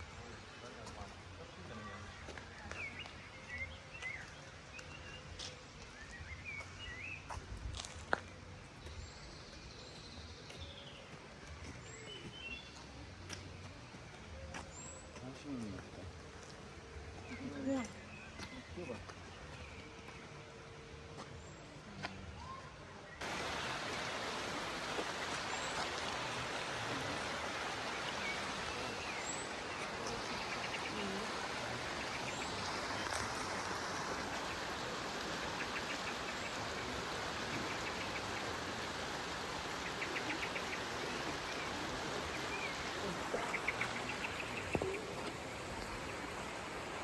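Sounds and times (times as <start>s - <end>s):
faint bird chirps and trills: 23.2s - 47.0s
waterfall rushing: 23.2s - 47.0s.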